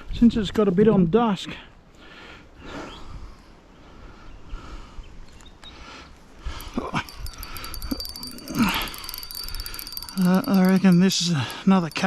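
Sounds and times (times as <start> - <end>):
fishing reel clicking rapidly: 6.6 - 12.0.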